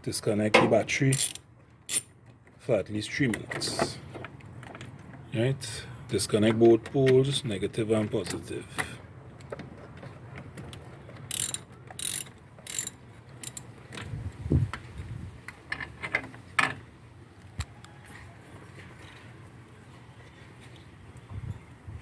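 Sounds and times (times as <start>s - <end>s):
metallic clicks and knocks: 0.6s - 2.1s, 10.6s - 13.7s
ratchet wrench ratcheting: 1.1s - 2.1s, 11.3s - 13.7s.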